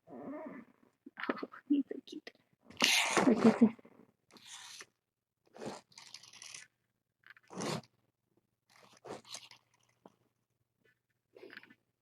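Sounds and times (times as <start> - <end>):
kitten biting toy rustles: 5.6 - 6.7.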